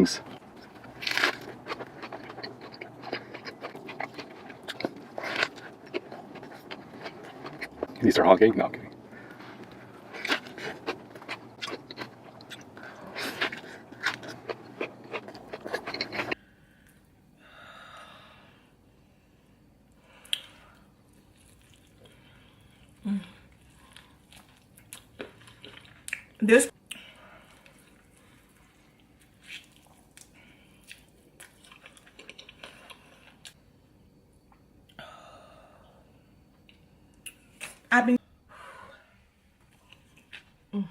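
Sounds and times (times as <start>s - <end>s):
chewing crunchy food: 0.2s - 8.1s, 8.9s - 16.4s, 20.3s - 33.6s.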